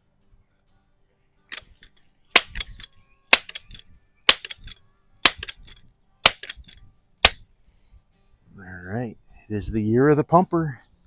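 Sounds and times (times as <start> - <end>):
air rifle pump lever clacks: 1.5 - 7.4.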